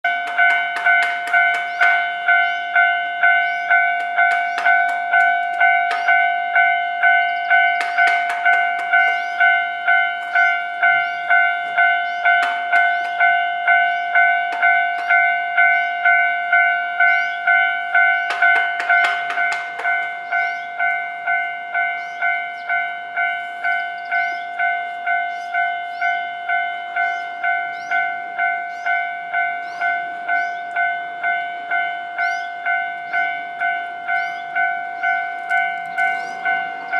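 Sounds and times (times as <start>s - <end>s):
level crossing warning bell: 0.0s - 36.9s
train wheels clicking over rail joints: 0.1s - 6.4s, 7.4s - 16.2s, 17.0s - 21.0s.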